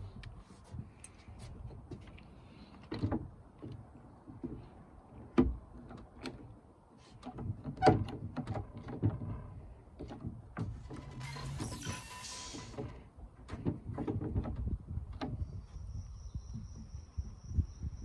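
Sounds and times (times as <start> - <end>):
knocks and clunks of handling: 2.8 - 6.5.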